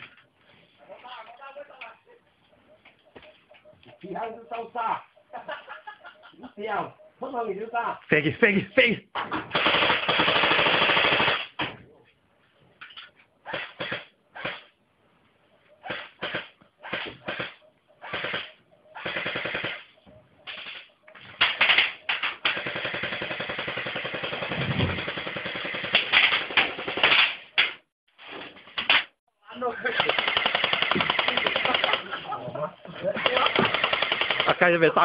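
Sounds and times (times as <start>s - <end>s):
airsoft rifles firing full auto: 9.5s - 11.6s, 13.5s - 14.7s, 15.9s - 19.9s, 21.4s - 27.5s, 29.9s - 32.1s, 33.2s - 34.8s.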